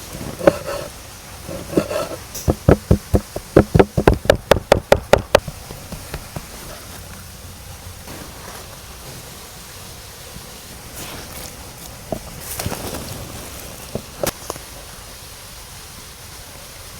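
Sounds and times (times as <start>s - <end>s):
faint steady hiss: 0.0s - 16.9s
rapid sharp knocks: 1.6s - 6.6s.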